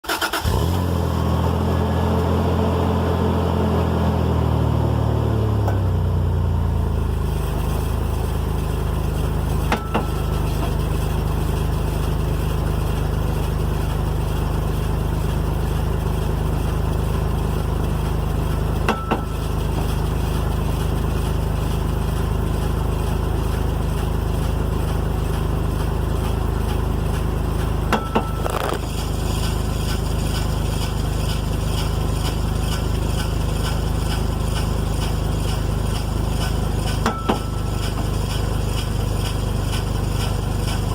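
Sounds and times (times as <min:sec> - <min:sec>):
truck engine running: 0:00.4 - 0:40.9
metallic driveline clunk: 0:09.6 - 0:10.8, 0:18.9 - 0:19.9, 0:27.9 - 0:28.8, 0:36.8 - 0:38.5.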